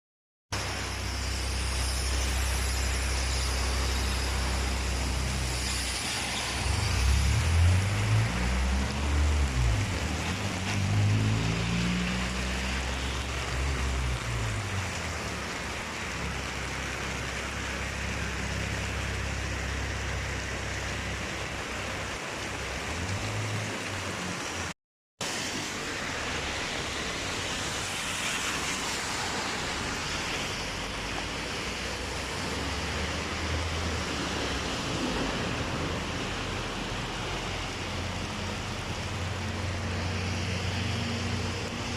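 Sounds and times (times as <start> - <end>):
heavy rain pouring: 0.6 - 41.9
vehicle engine passing: 6.5 - 15.0.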